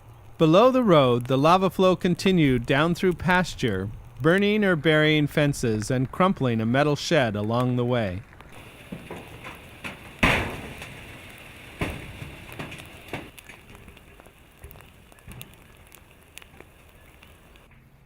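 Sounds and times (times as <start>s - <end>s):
lava crackling: 0.0s - 17.7s
sharp pops: 8.4s - 17.7s.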